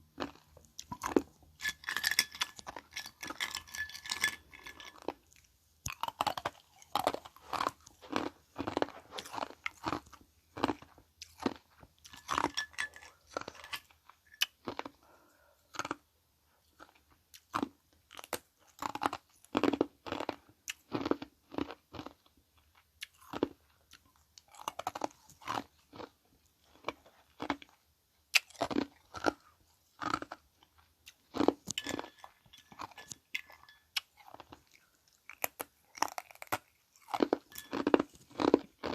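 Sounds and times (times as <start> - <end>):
ice chewing crunches: 4.1 - 15.0, 31.1 - 38.9.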